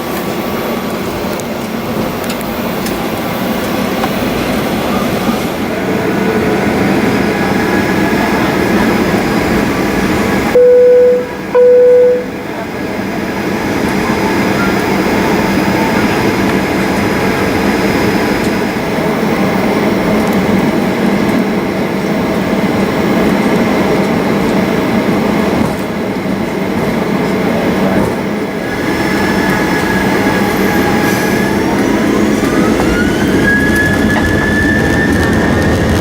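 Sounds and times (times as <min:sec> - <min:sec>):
airplane cabin rumble and hiss: 0:00.0 - 0:36.0
jet engine whine rising: 0:28.3 - 0:36.0.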